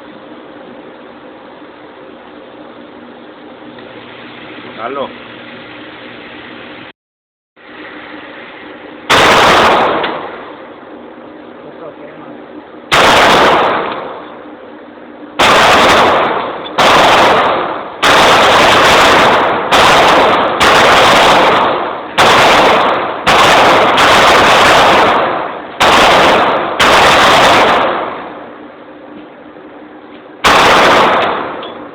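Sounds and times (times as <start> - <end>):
gunshots with echo: 9.1 - 10.5, 12.9 - 14.3, 15.4 - 28.4, 30.4 - 31.7.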